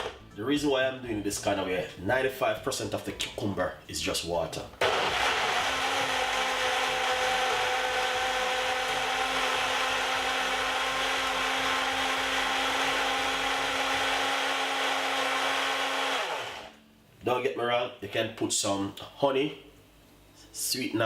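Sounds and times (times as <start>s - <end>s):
blender running: 4.8s - 16.8s.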